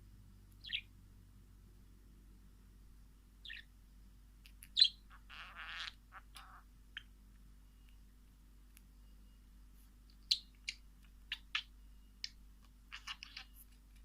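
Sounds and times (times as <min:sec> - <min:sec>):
wild birds chirping: 0:00.0 - 0:01.0, 0:03.4 - 0:03.8, 0:04.4 - 0:07.2, 0:10.1 - 0:14.0.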